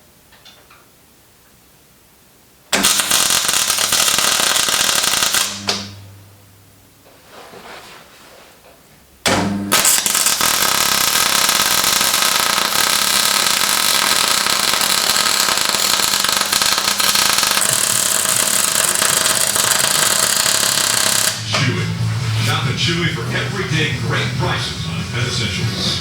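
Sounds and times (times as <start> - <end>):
power tool running: 9.3 - 24.6.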